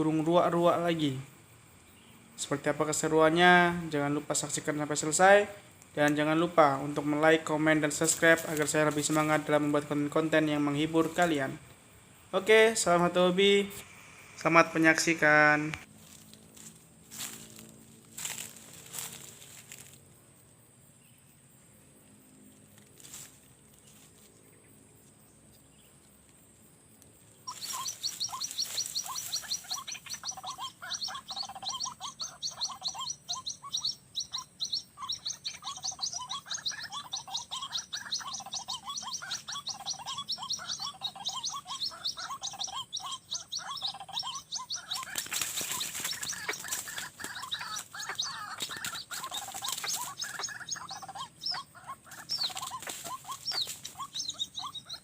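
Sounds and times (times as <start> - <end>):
waterhen calling rapidly: 27.5 - 55.0.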